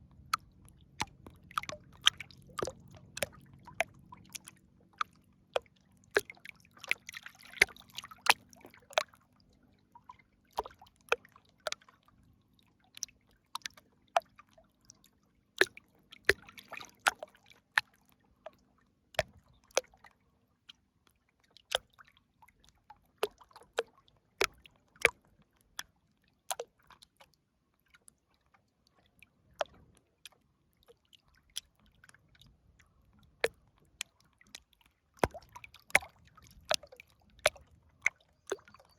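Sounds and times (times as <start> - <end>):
water dripping and plopping: 0.0 - 12.1, 15.6 - 18.6, 19.2 - 20.0, 21.7 - 25.9, 26.5 - 27.2, 27.9 - 38.9
bubbling splashes: 0.3 - 5.1, 6.2 - 8.6.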